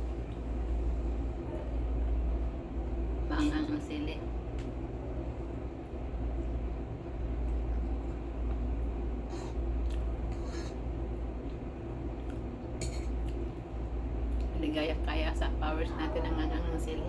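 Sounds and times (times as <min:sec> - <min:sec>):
eating noises: 0:07.4 - 0:13.7.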